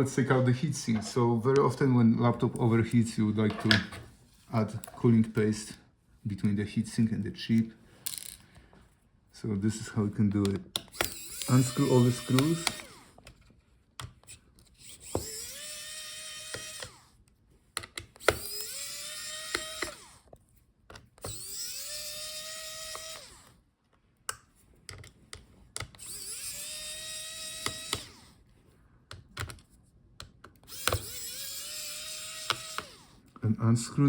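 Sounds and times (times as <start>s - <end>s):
electric screwdriver motor whining: 10.9s - 13.2s, 14.7s - 17.2s, 18.1s - 20.3s, 21.2s - 23.6s, 26.0s - 28.4s, 30.6s - 33.2s.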